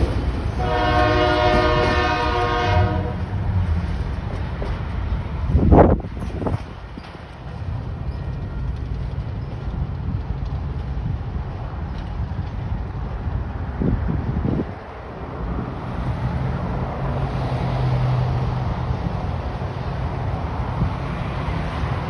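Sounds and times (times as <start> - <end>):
wind buffeting microphone: 0.0 - 8.0, 9.8 - 17.1
diesel locomotives rumbling: 0.0 - 22.0.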